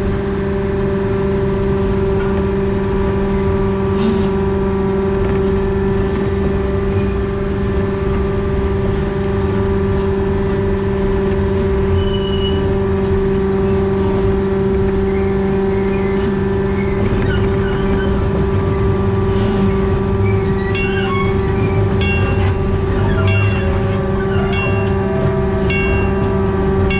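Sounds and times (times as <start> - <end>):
locomotive diesel engine running: 0.0 - 26.9.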